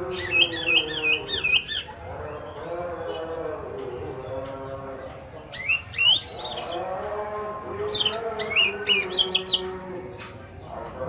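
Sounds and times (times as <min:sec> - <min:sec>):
bird singing harsh whistled song: 0:00.1 - 0:03.3, 0:05.5 - 0:06.8, 0:07.9 - 0:09.7.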